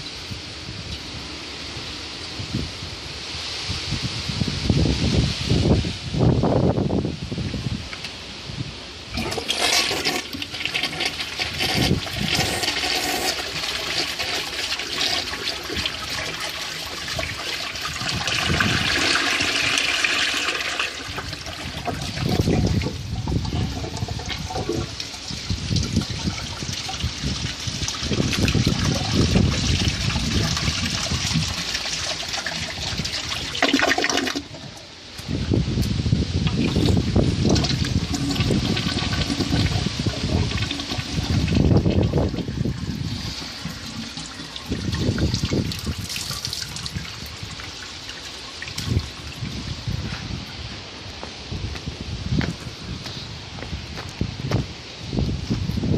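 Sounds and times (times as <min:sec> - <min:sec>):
toilet flushing: 0:09.1 - 0:34.6, 0:37.5 - 0:49.4.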